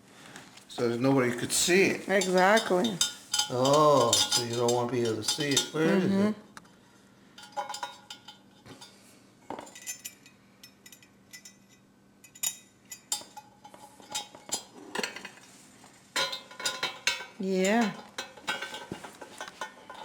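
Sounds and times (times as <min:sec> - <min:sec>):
metal tools clinking: 0:01.7 - 0:05.8, 0:07.4 - 0:09.0, 0:09.6 - 0:15.3.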